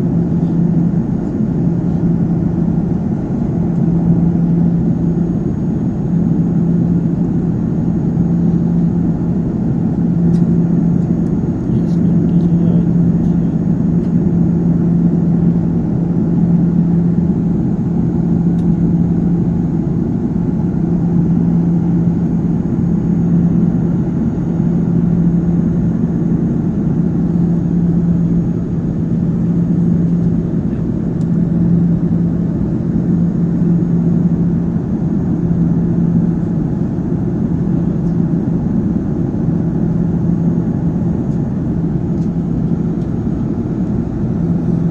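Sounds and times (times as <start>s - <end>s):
airliner engine drone: 0.0s - 44.9s
loud pulsing hum: 0.0s - 44.9s.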